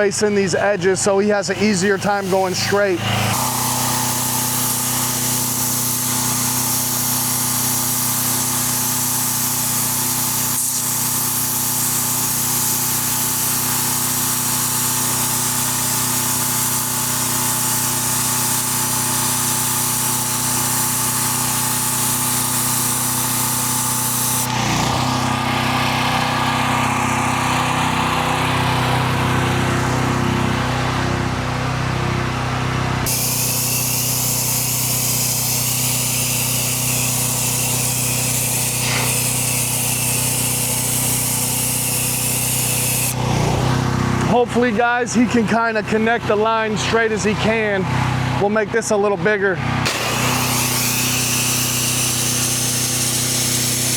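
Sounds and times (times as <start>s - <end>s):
pressure washer engine running: 0.0s - 53.9s
water jet spraying on concrete: 0.7s - 25.8s, 33.0s - 43.8s, 49.8s - 53.9s.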